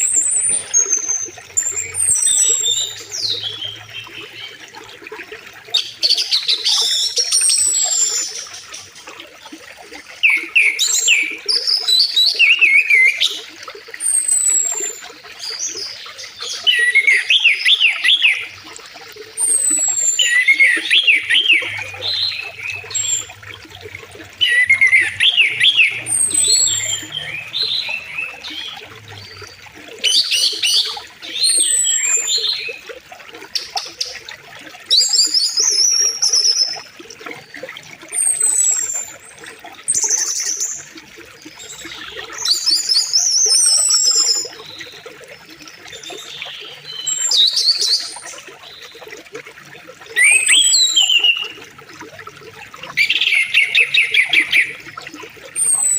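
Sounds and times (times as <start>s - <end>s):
songbirds chirping and whistling: 0.0s - 4.6s, 10.2s - 32.9s, 34.9s - 37.4s, 38.1s - 45.2s, 50.1s - 51.6s, 52.8s - 55.9s
river flowing: 0.0s - 6.4s, 16.9s - 35.5s.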